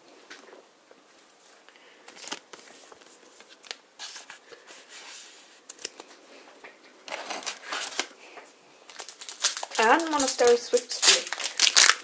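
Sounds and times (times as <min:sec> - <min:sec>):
cards rustling: 0:07.1 - 0:08.2, 0:08.9 - 0:12.0.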